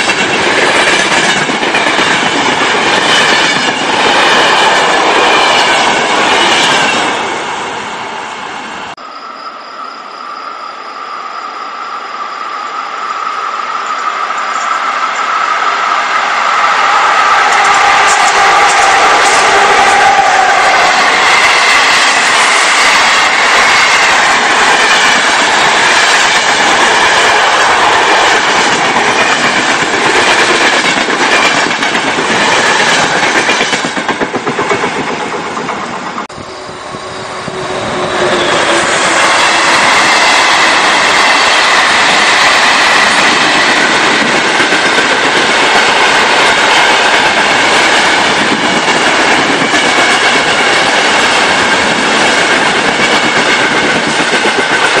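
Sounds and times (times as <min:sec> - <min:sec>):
faint wheel squeal: 0:09.0 - 0:15.5
train wheels clattering: 0:16.8 - 0:36.2.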